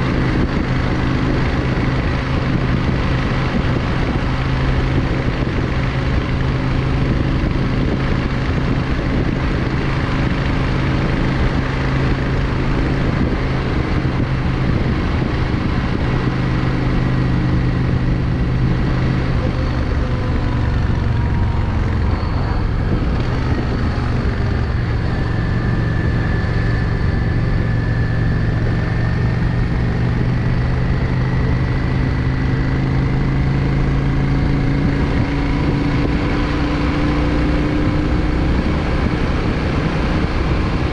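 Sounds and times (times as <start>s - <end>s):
motorcycle engine running: 0.0s - 40.9s
steady rush of noise: 0.0s - 40.9s.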